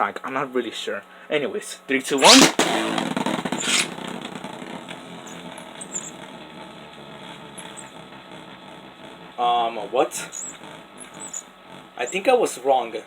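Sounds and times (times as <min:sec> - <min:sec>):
top scraping hiss: 0:02.2 - 0:05.7
spinning top whirring rattle: 0:02.2 - 0:09.4, 0:10.2 - 0:11.5.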